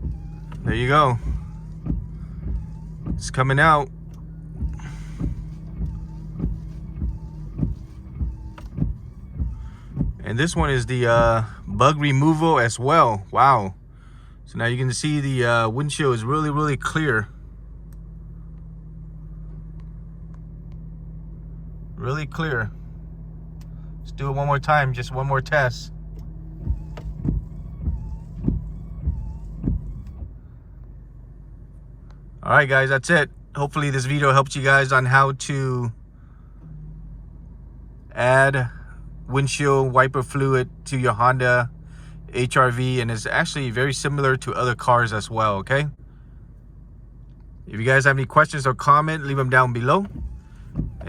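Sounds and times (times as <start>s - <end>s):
wipers knocking: 0.0s - 11.5s, 26.1s - 30.4s, 49.8s - 51.0s
wiper motor humming: 0.0s - 35.5s, 46.0s - 51.0s
car engine idling: 0.0s - 51.0s.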